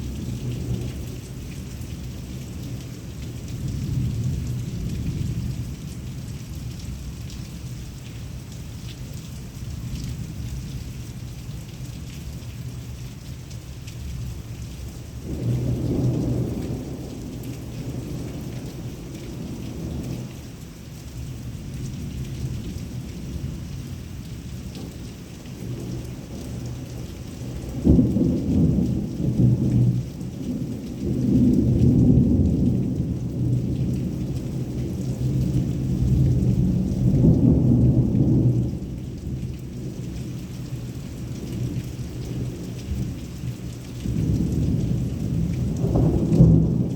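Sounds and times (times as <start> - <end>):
heavy rain falling: 0.0 - 46.9
rolling thunder: 15.3 - 20.3, 25.7 - 40.1, 44.0 - 46.9.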